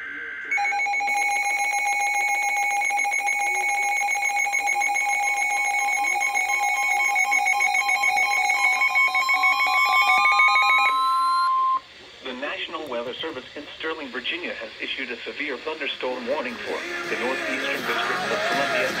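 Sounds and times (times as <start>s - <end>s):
harsh electronic alarm tones: 0.0s - 11.9s.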